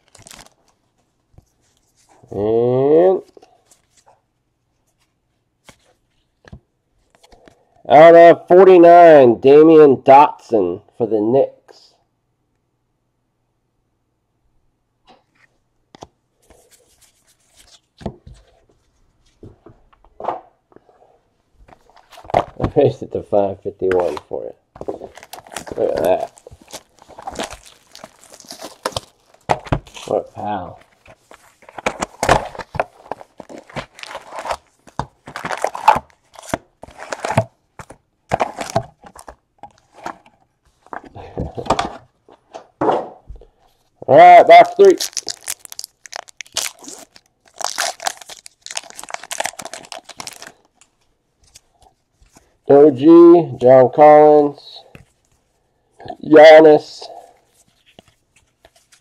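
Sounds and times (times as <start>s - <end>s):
foil wrappers crinkling and tearing: 0.0s - 0.8s, 24.8s - 37.5s, 44.6s - 51.7s
cards sliding and rubbing: 15.3s - 19.4s.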